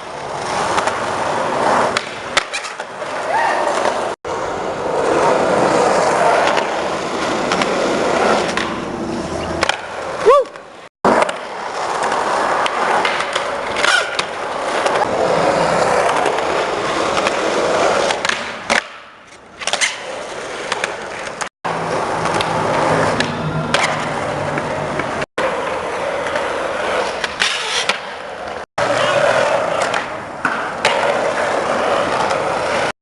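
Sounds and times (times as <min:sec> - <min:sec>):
skateboard wheels rolling on concrete: 0:00.0 - 0:33.0
skateboard clacking on ground: 0:00.5 - 0:04.1, 0:09.5 - 0:15.1, 0:16.0 - 0:32.9.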